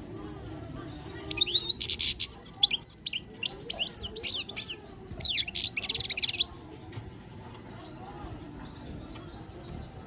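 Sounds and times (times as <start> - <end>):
goldfinch singing: 1.3 - 6.5.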